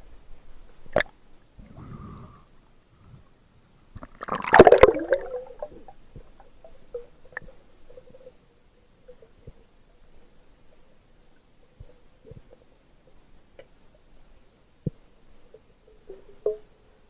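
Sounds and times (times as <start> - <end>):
burst of bubbles: 4.0 - 5.9
underwater gurgling: 4.0 - 13.2.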